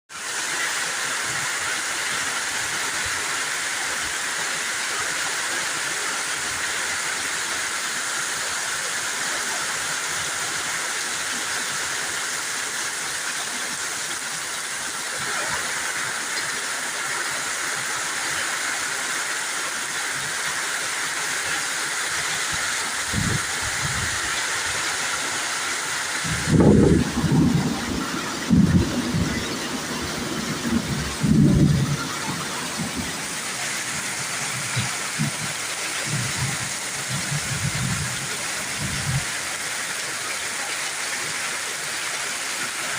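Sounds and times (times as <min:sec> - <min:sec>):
heavy rain hissing: 0:00.1 - 0:42.9
low rumbles: 0:26.2 - 0:33.5.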